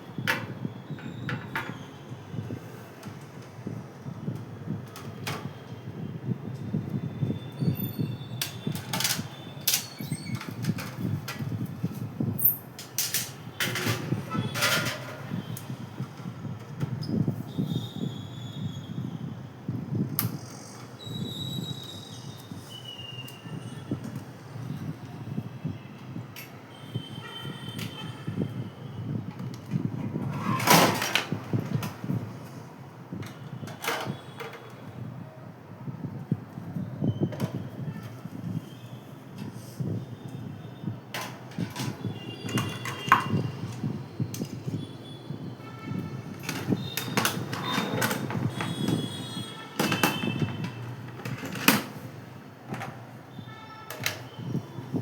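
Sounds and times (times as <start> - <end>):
objects knocking and clattering: 12.8 - 15.2, 49.8 - 52.0.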